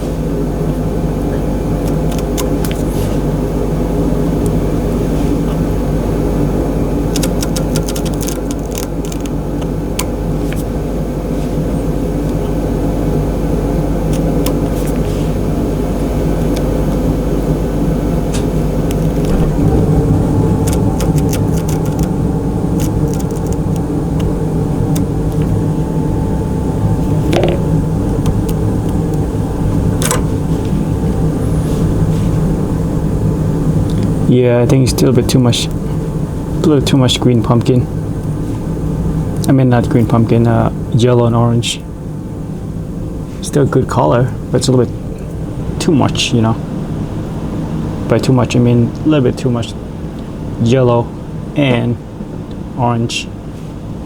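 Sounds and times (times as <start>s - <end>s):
low mechanical hum: 0.0s - 54.0s
small clicks: 1.8s - 2.9s, 7.1s - 10.6s, 20.6s - 22.2s, 22.8s - 24.3s.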